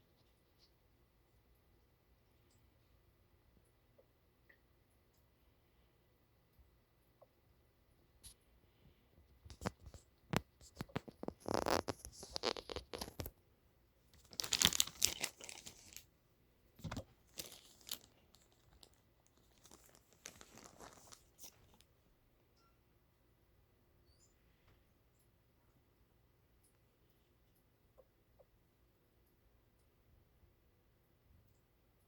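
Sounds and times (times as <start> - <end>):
laundry rustling and crinkling: 14.2 - 16.1, 16.8 - 21.9.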